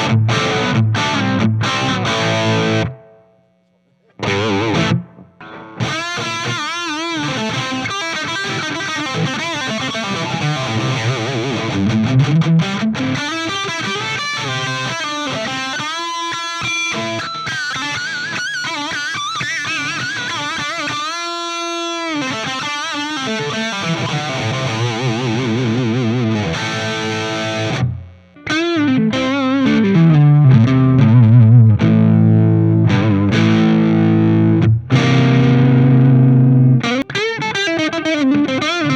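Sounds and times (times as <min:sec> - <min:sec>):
distorted electric guitar: 0:00.0 - 0:38.9.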